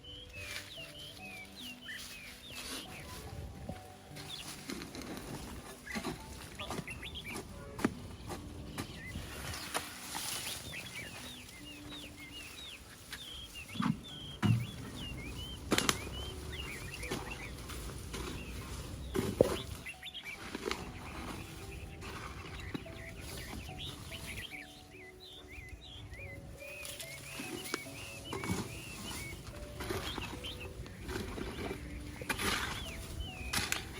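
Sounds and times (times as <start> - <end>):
small birds chirping: 0.0 - 33.9.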